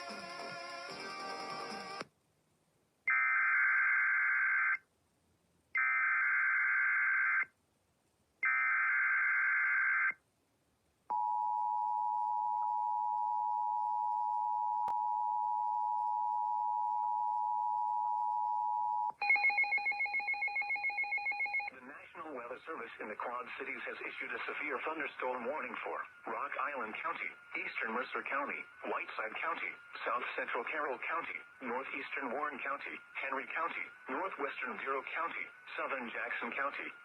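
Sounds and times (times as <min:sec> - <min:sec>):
digital data tone bursts: 0:24.1 - 0:37.0.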